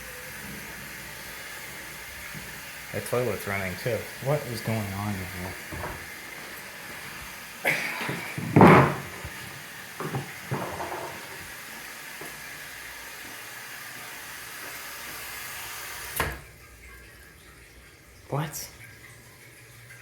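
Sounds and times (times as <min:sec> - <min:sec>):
toilet water running: 0:00.0 - 0:20.0
heavy knocks: 0:08.4 - 0:09.3.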